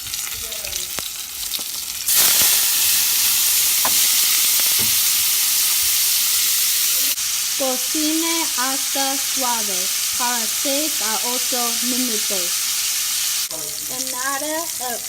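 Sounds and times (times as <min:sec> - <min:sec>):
food sizzling in hot oil: 0:00.0 - 0:15.0.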